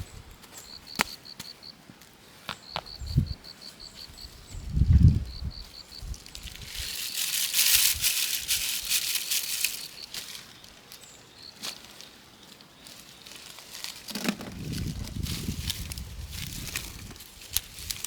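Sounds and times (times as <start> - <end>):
cricket chirping: 0.0 - 1.8, 2.5 - 14.1
dry rustling and crinkling: 4.9 - 18.0
handling noise: 6.1 - 11.0.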